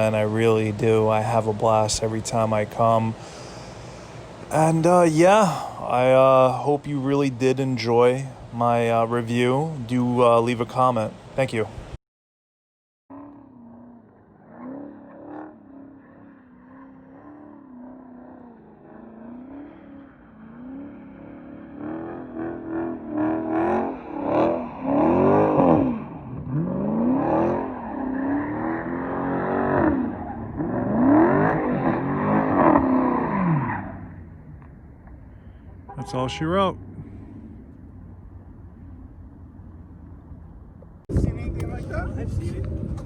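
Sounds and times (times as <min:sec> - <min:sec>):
car engine revving hard: 0:14.3 - 0:34.1.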